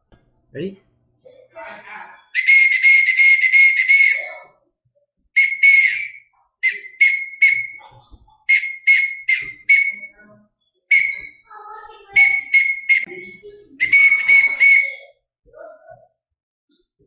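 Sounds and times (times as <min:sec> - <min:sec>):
whistle blasts in morse code: 0:02.4 - 0:04.4, 0:05.4 - 0:07.9, 0:08.5 - 0:10.2, 0:10.9 - 0:11.4, 0:12.1 - 0:15.0.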